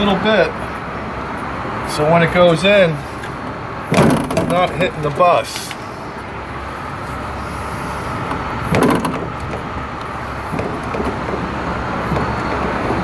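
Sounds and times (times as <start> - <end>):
vehicle rumble: 0.0 - 13.0
metal knocks and clatter: 3.9 - 4.9, 8.7 - 9.7, 10.5 - 11.5.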